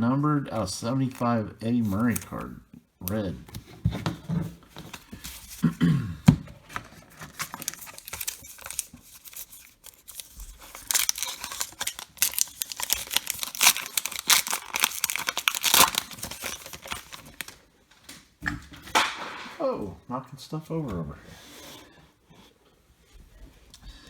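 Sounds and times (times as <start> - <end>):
wrapper tearing and crinkling: 6.8 - 17.6.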